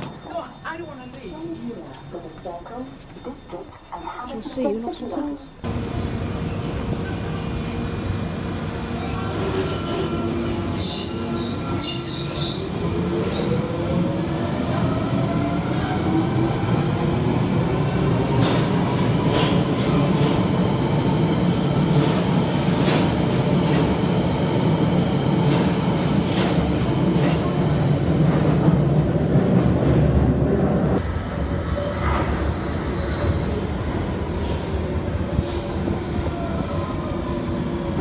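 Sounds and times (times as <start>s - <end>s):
train running noise: 0.0s - 38.0s
train traction motor whine: 5.6s - 14.4s.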